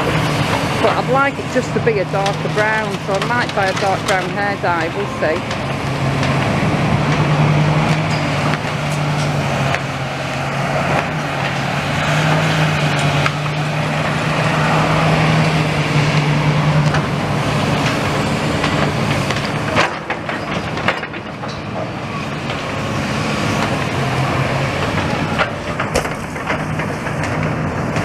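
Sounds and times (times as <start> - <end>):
large engine humming: 0.0 - 28.0
sharp knocks and clatter: 17.7 - 22.6, 24.8 - 28.0.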